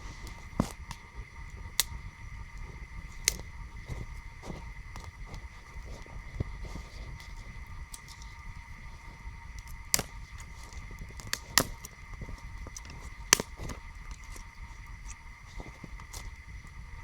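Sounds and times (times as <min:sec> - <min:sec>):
campfire crackling: 0:00.0 - 0:17.0
sharp wood cracks: 0:09.6 - 0:14.5.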